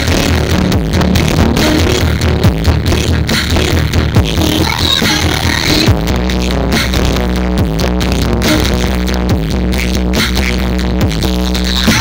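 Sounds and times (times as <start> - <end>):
electronic dance music: 0.0 - 10.4
heavy bass: 0.0 - 12.0
deep kick drum hits: 0.2 - 3.2.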